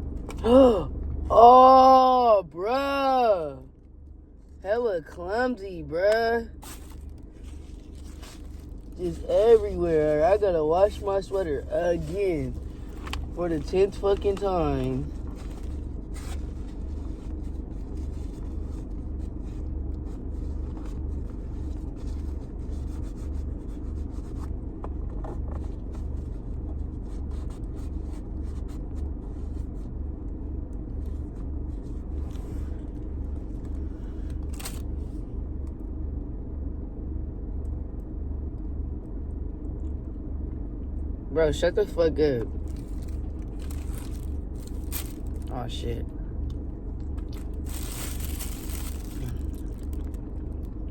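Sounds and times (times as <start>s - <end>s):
low rumble: 0.0s - 50.9s
faint clicks and scrapes: 31.0s - 35.0s, 42.4s - 45.5s, 46.5s - 50.9s.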